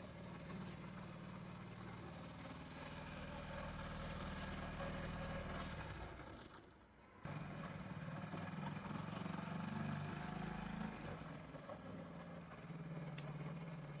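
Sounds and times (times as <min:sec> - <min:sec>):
motorcycle engine idling: 0:00.0 - 0:06.6.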